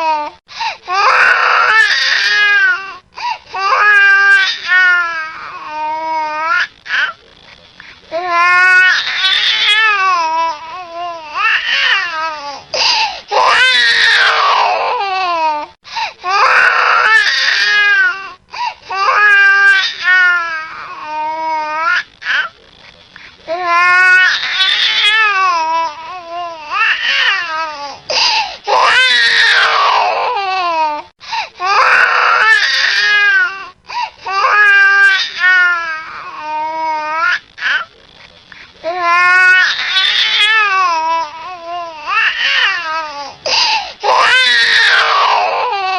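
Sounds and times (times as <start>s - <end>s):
baby crying: 0.0s - 7.2s, 8.1s - 22.6s, 23.5s - 37.9s, 38.8s - 45.9s
baby gasping breaths: 0.5s - 0.9s, 12.5s - 13.3s, 15.8s - 16.2s, 27.9s - 28.7s, 31.2s - 31.6s, 43.3s - 44.0s.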